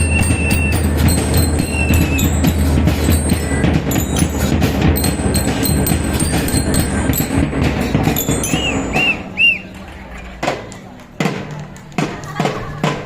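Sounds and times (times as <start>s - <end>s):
bell lyres ringing: 0.0s - 9.8s
steady drum beat: 0.0s - 13.0s.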